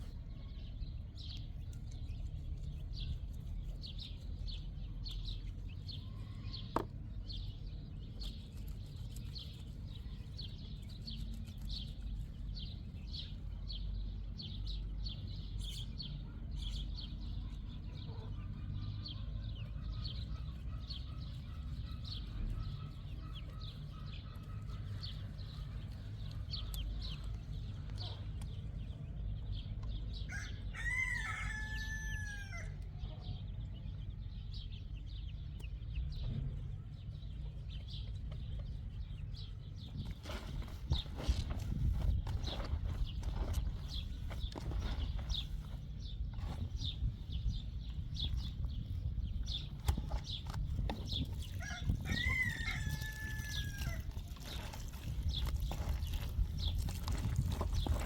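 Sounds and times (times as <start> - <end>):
steady low rumble: 0.0 - 18.6, 32.7 - 58.0.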